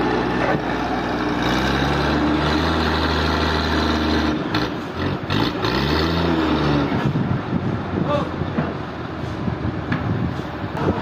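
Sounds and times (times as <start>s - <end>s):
engine running: 0.0s - 11.0s.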